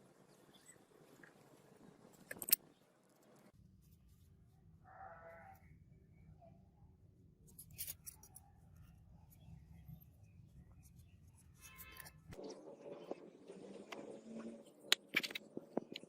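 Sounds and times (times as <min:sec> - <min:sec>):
animal bleat: 0:04.9 - 0:05.6.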